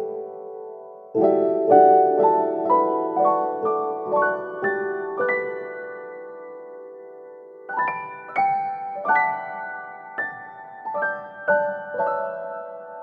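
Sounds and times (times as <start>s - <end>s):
slow soft piano music: 0.0s - 13.0s.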